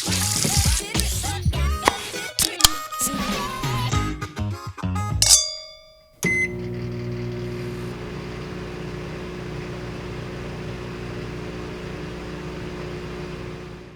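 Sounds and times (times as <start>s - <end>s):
microwave humming: 5.2s - 13.9s
microwave beep: 5.3s - 13.9s
microwave click: 6.2s - 13.9s.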